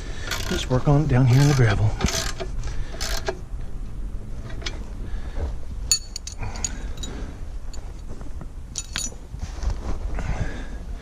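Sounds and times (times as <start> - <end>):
low steady rumble: 0.0 - 11.0
metallic clinks: 5.9 - 8.0, 8.7 - 9.3.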